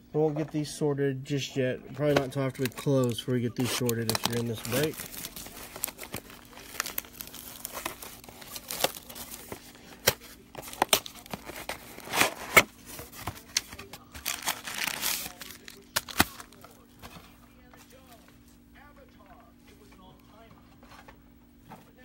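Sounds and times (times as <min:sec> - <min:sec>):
plastic wrap crinkling and tearing: 0:02.2 - 0:17.1.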